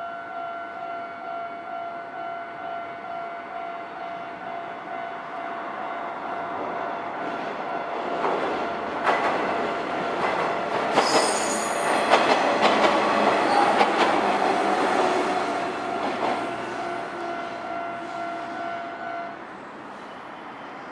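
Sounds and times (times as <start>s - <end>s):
train wheels clacking over rail joints: 8.3s - 14.6s
high wheel squeal: 11.0s - 12.0s.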